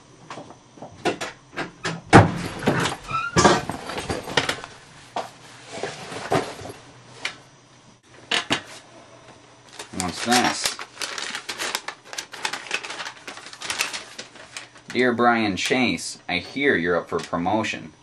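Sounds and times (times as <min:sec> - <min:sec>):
knocks and clatter of furniture: 0:00.2 - 0:04.6, 0:05.2 - 0:06.8.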